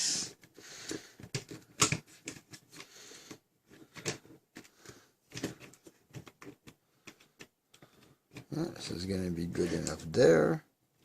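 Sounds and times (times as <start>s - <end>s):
plastic parts clicking: 0.4s - 8.6s.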